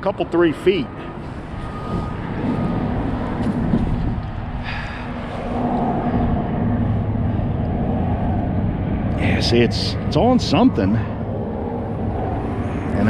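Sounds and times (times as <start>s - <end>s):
faint engine drone: 0.0s - 13.0s
road traffic rumble: 0.0s - 13.0s.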